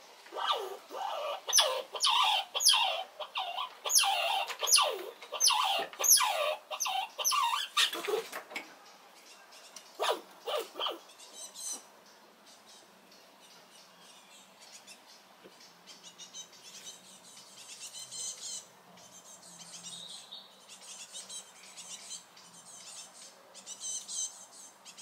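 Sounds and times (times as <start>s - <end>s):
squirrel squealing: 0.3s - 8.3s, 10.0s - 11.0s.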